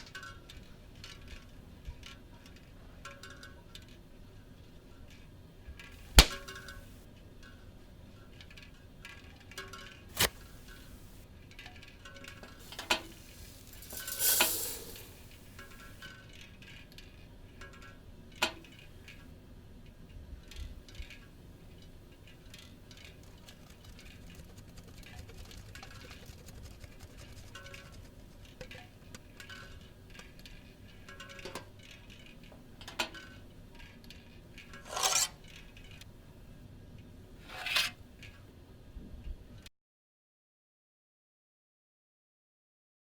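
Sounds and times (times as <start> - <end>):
sharp clicks or knocks: 6.1 - 6.9
short hissing burst: 12.6 - 16.0.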